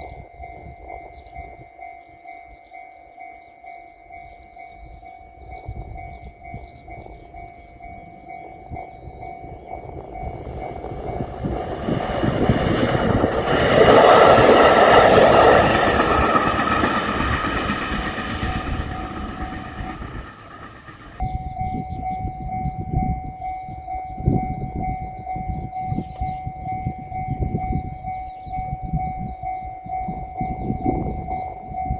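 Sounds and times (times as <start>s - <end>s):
level-crossing alarm ringing: 0.0s - 31.9s
train passing: 0.0s - 31.9s
wheels knocking on rails: 8.8s - 23.2s.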